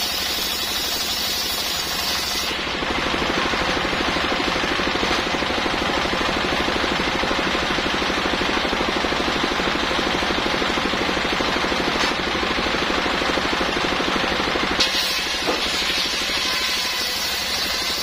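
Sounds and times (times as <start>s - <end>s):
circular saw cutting wood: 0.0s - 3.8s, 9.5s - 18.0s
rapid machine pulsing: 2.6s - 18.0s.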